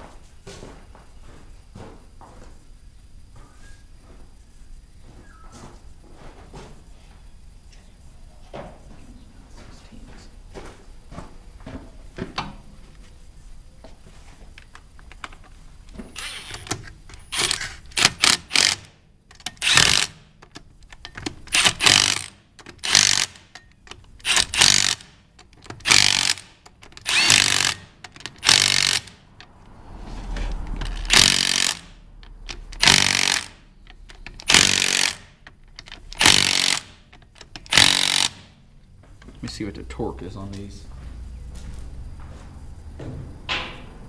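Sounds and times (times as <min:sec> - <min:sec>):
impact wrench bursts: 0:16.1 - 0:29.5, 0:30.7 - 0:38.6.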